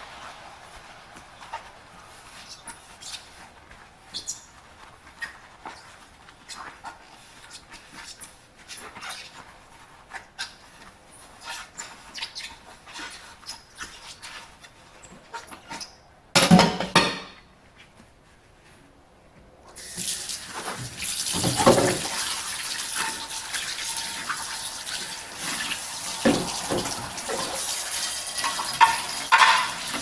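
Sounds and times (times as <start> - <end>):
water running into sink: 19.8 - 30.0
crockery clinking and scraping: 20.6 - 30.0.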